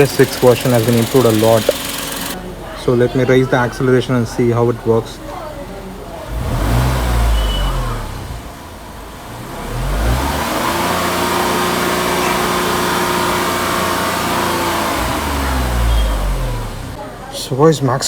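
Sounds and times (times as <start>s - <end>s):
car engine revving: 0.0s - 2.4s, 6.0s - 17.0s.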